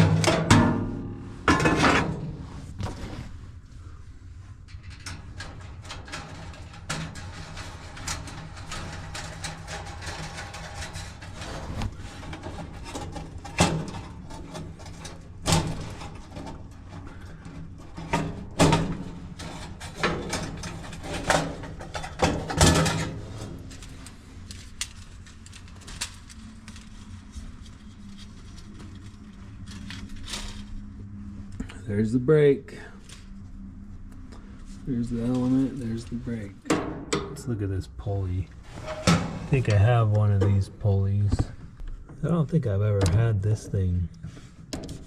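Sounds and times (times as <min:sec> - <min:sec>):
metal panels knocking and clanking: 0:00.0 - 0:03.3, 0:04.7 - 0:24.0, 0:36.6 - 0:37.4, 0:38.8 - 0:40.7
low steady hum: 0:00.0 - 0:45.0.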